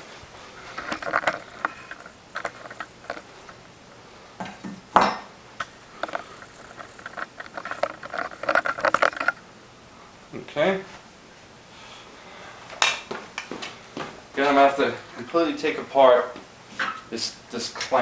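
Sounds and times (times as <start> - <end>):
metal hardware clinks and clicks: 0.8 - 3.3, 6.0 - 9.4.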